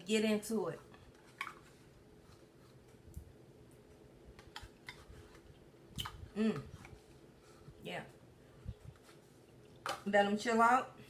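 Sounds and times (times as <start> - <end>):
person humming: 6.4 - 6.7.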